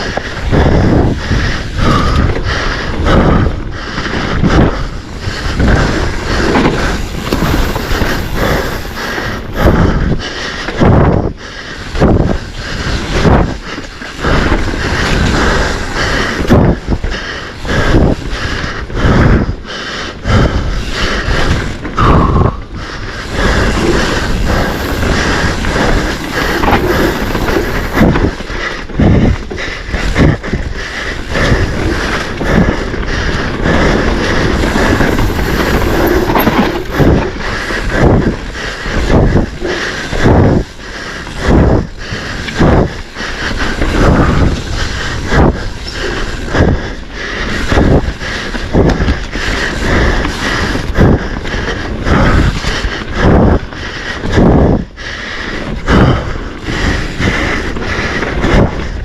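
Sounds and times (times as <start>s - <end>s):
bike tyre noise: 0.0s - 59.0s
wind on microphone: 0.0s - 59.0s
bike knocks and rattles: 2.0s - 10.0s, 21.3s - 46.8s.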